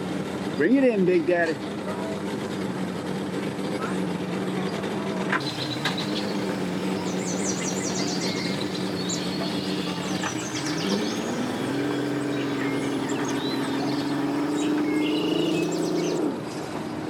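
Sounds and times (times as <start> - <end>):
outboard motor running: 0.0 - 17.0
birds chirping: 5.4 - 16.3.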